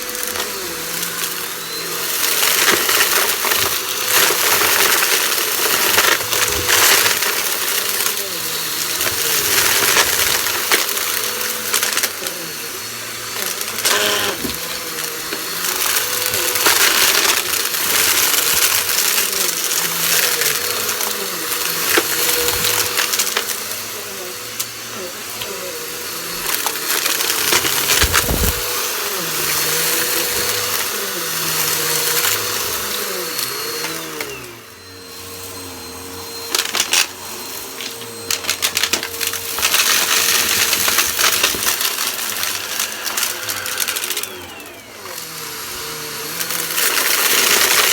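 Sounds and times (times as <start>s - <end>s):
vacuum cleaner motor whine: 0.0s - 47.9s
debris crackling through suction: 27.6s - 28.7s.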